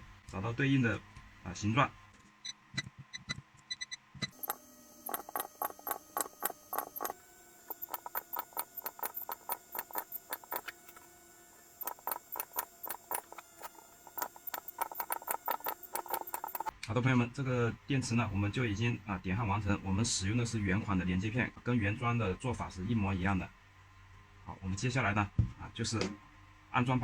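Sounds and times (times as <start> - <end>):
spot welder clicking: 4.3 - 16.7.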